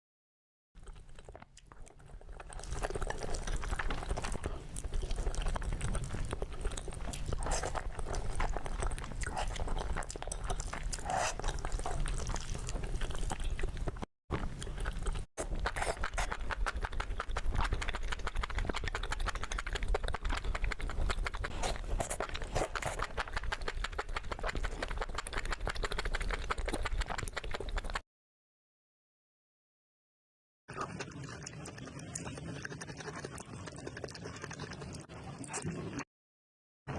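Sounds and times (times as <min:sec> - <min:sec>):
person chewing with smacks: 0:00.8 - 0:28.0.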